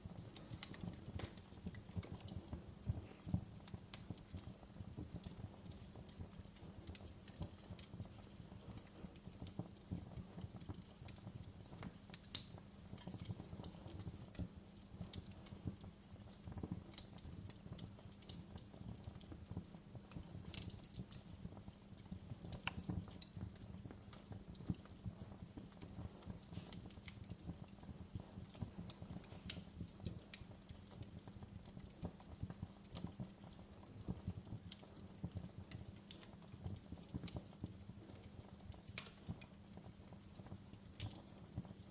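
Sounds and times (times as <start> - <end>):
fire crackling and popping: 0.0 - 41.9.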